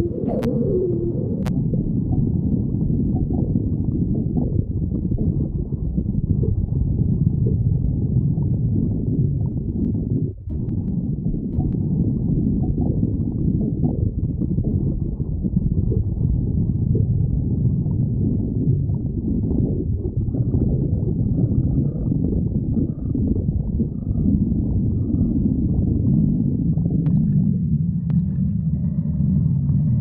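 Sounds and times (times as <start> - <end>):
stomach growling: 0.0 - 30.0.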